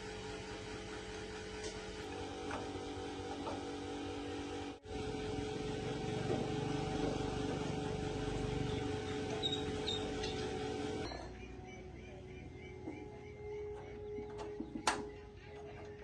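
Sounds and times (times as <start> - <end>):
electric motor humming: 0.0 - 11.1.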